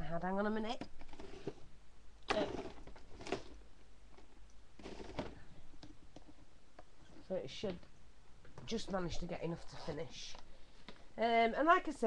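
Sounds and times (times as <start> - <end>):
rustles and scrapes: 1.0 - 1.7, 2.3 - 6.4, 8.8 - 10.4.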